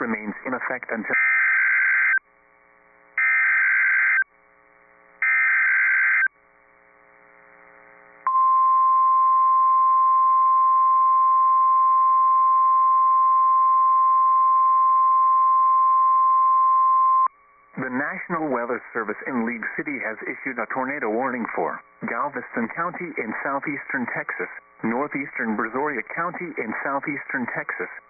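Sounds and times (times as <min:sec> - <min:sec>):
screeching digital data bursts: 0:01.1 - 0:02.2, 0:03.2 - 0:04.2, 0:05.2 - 0:06.3
steady alarm tone: 0:01.2 - 0:02.2, 0:03.2 - 0:04.2, 0:05.2 - 0:06.3.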